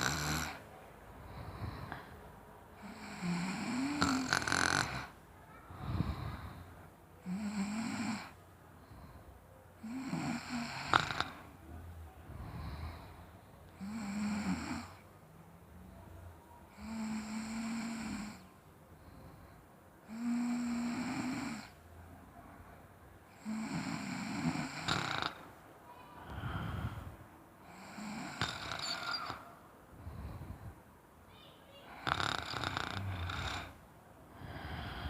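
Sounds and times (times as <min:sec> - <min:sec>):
person snoring loudly: 0:00.0 - 0:00.6, 0:02.8 - 0:05.2, 0:07.2 - 0:08.3, 0:09.8 - 0:11.4, 0:13.8 - 0:15.0, 0:16.8 - 0:18.4, 0:20.1 - 0:21.7, 0:23.4 - 0:25.5, 0:27.6 - 0:29.4, 0:32.0 - 0:33.8, 0:34.4 - 0:35.0
quiet breathing: 0:00.0 - 0:35.0.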